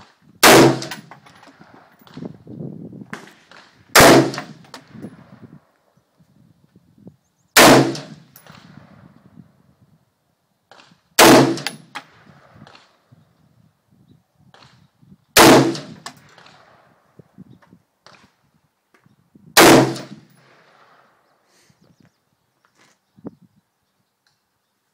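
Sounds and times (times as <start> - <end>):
rifle shots: 0.4 - 2.2, 3.1 - 5.0, 7.6 - 8.9, 10.7 - 13.0, 15.4 - 16.8, 19.6 - 21.1.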